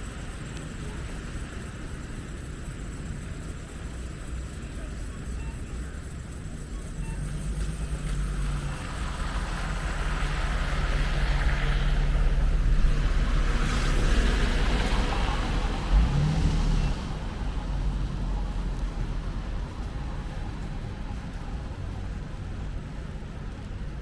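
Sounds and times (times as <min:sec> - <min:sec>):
car engine hum: 0:00.0 - 0:24.0
tyre hiss on wet street: 0:07.2 - 0:24.0.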